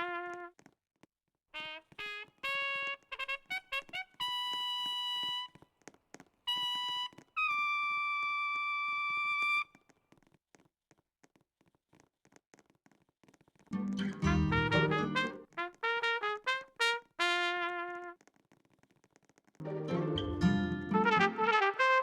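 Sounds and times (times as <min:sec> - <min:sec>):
trumpet playing: 0:00.0 - 0:00.5, 0:01.6 - 0:05.6, 0:14.0 - 0:18.2, 0:19.6 - 0:22.0.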